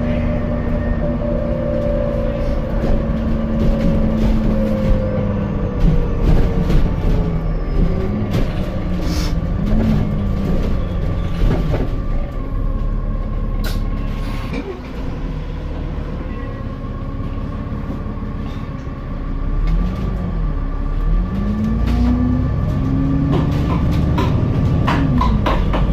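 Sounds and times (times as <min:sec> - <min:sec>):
bus engine running: 0:00.0 - 0:25.9.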